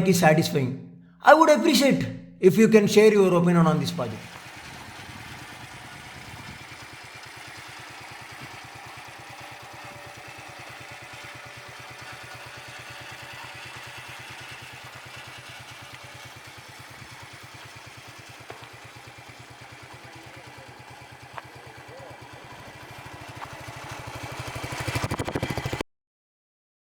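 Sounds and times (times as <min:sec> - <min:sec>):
motorcycle engine idling: 0:04.1 - 0:25.8.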